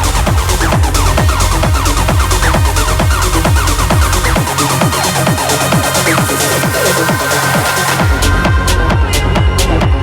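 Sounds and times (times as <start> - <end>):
kick drum beat: 0.0 - 10.0.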